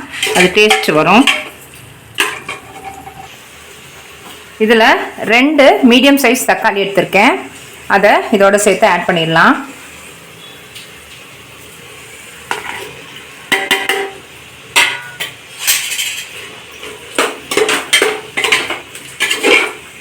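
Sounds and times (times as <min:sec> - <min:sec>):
metal spoon scraping a pot: 0:00.0 - 0:01.5, 0:02.2 - 0:03.3, 0:12.5 - 0:13.0, 0:15.0 - 0:19.9
frying sizzle: 0:00.0 - 0:20.0.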